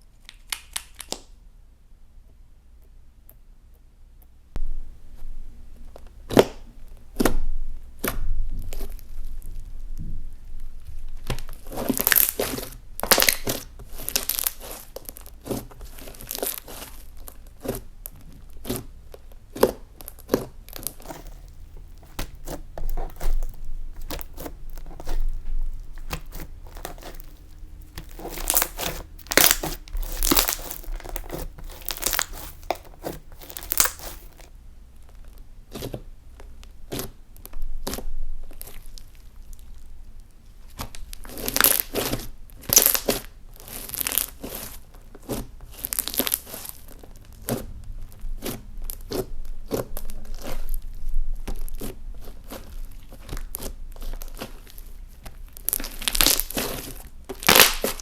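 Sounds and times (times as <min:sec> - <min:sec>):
slime crackling and popping: 0:00.2 - 0:01.3, 0:11.1 - 0:34.5, 0:40.8 - 0:47.7, 0:48.4 - 0:58.0.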